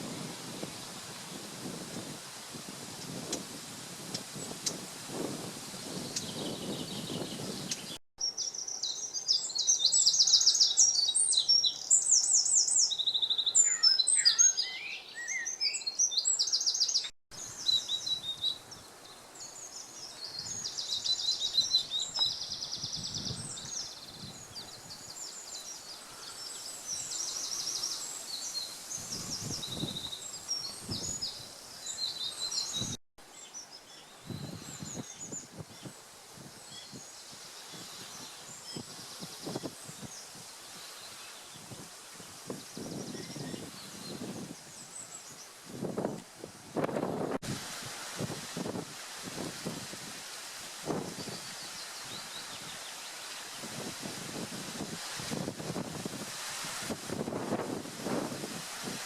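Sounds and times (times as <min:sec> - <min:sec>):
rushing wind-like noise: 0:00.0 - 0:08.0, 0:26.9 - 0:31.6, 0:45.6 - 0:52.8, 0:53.4 - 0:59.0
songbirds chirping and trilling: 0:05.9 - 0:46.2.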